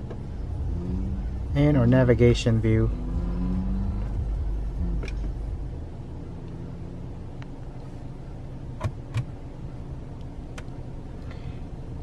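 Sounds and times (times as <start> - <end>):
low hum inside car: 0.0 - 12.0
car cabin controls clicking: 4.8 - 5.4, 8.8 - 9.4.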